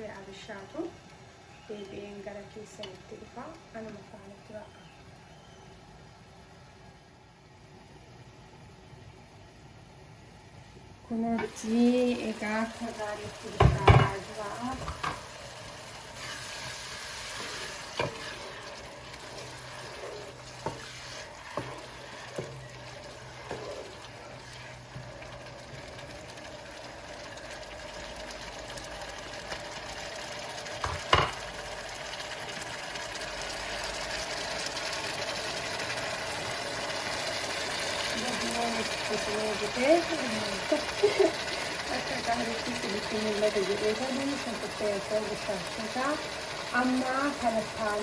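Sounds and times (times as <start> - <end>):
onions sizzling in a pot: 0.0 - 48.0
spoon tapping a pot: 13.6 - 15.2, 30.8 - 31.4.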